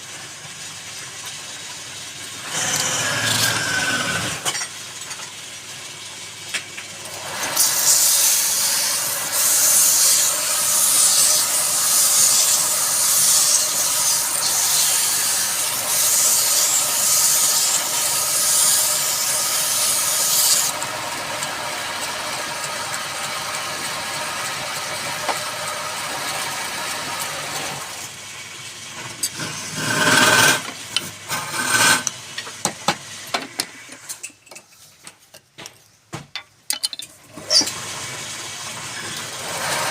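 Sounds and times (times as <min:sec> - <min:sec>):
woodworking machine cutting wood: 0:02.4 - 0:04.5, 0:07.0 - 0:28.1, 0:29.2 - 0:32.5, 0:37.3 - 0:39.9.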